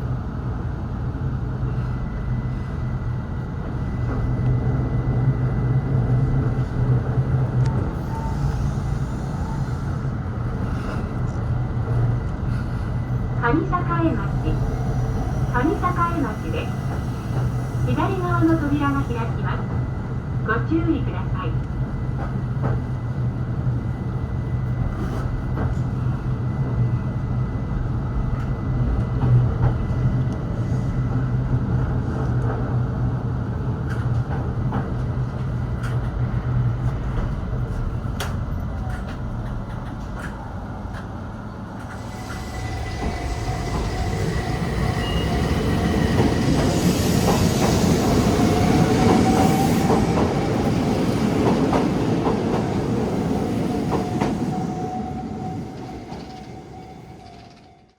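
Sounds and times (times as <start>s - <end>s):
low train hum: 0.0s - 57.9s.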